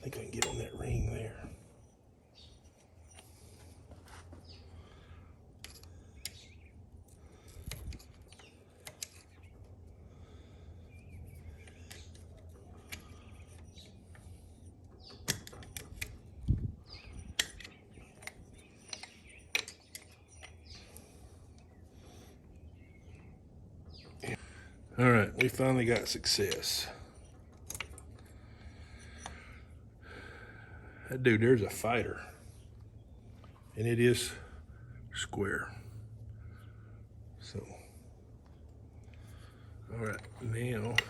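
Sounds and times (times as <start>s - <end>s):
hand tool clicking on metal: 17.2s - 20.8s.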